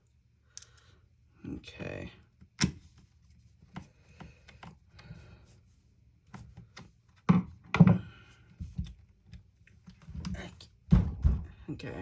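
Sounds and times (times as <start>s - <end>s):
knocks on workbench: 10.9s - 11.6s.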